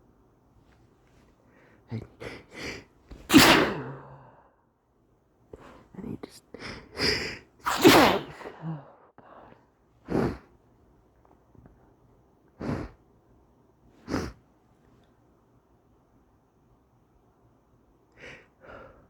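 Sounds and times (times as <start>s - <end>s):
short breathy bursts: 1.5s - 4.5s, 12.6s - 13.0s
person sneezing loudly: 1.9s - 4.4s, 6.7s - 9.0s, 14.0s - 14.4s.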